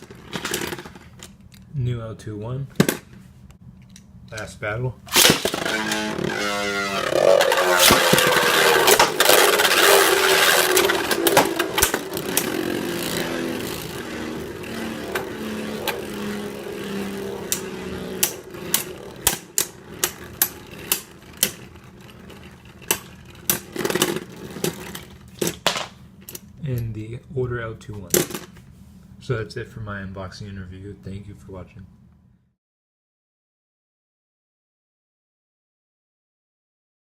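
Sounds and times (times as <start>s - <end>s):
spinning tops whirring: 5.1s - 25.4s
tops clacking together: 5.1s - 26.5s.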